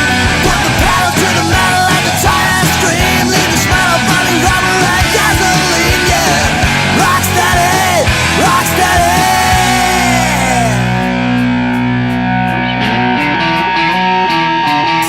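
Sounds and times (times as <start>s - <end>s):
lead guitar bending notes: 0.0s - 15.0s
rock music: 0.0s - 15.0s.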